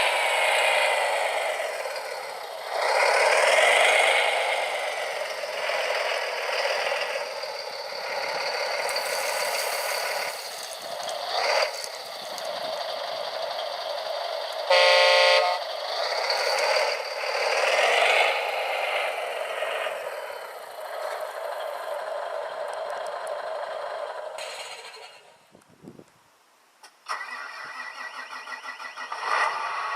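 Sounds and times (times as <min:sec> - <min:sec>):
small motors whining and rattling: 0:00.0 - 0:14.7.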